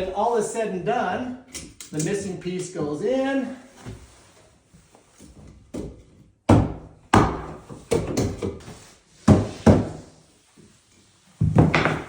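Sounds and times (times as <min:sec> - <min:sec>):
hammer striking wood: 0:11.6 - 0:12.0.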